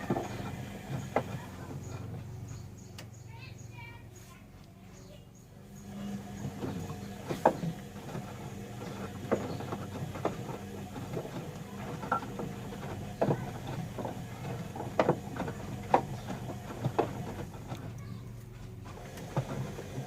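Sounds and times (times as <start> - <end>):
laundry knocking and splashing in drum: 0.0 - 2.2, 6.2 - 18.1, 19.0 - 20.0
washing machine motor hum: 0.0 - 20.0.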